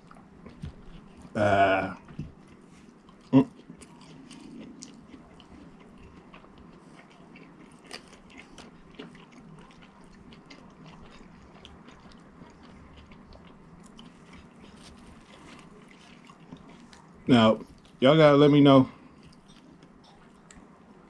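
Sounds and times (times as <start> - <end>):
person chewing with mouth clicks: 0.0 - 18.0, 19.0 - 20.7.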